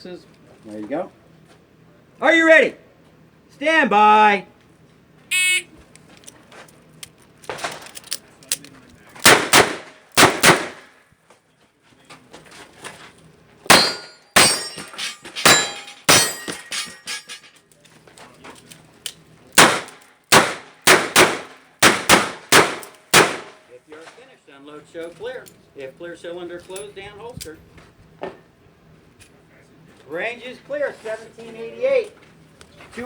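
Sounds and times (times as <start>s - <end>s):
shot timer beep: 5.3s - 5.7s
revolver gunshots: 9.2s - 10.9s, 19.6s - 23.6s.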